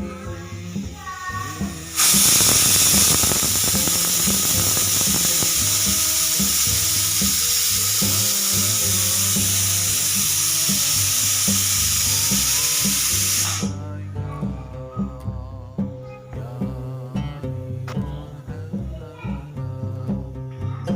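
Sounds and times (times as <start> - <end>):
pressure cooker steam hiss: 0.4 - 13.8.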